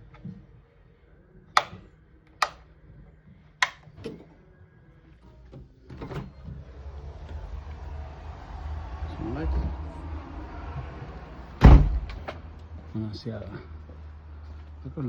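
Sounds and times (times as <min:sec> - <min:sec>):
light switch clicks: 0:01.6 - 0:01.8, 0:02.4 - 0:02.6, 0:03.6 - 0:03.8
low rumble: 0:06.6 - 0:12.4.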